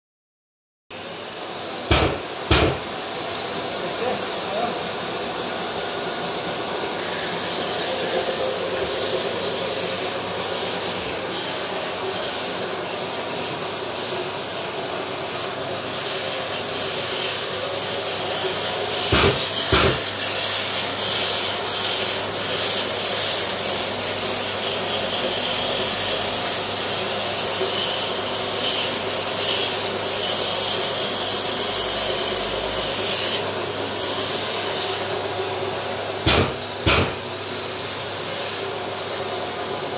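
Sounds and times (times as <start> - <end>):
sharp knocks: 1.9 - 2.9, 19.1 - 20.1, 36.2 - 37.2
abrasive pad sanding wood: 7.1 - 35.3.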